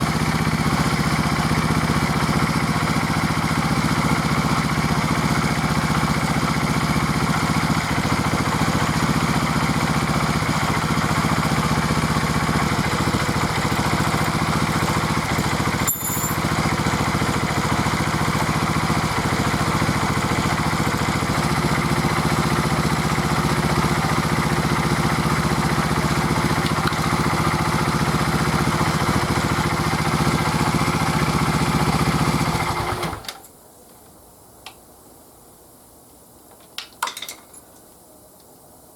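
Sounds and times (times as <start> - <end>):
motorcycle engine idling: 0.0 - 33.2.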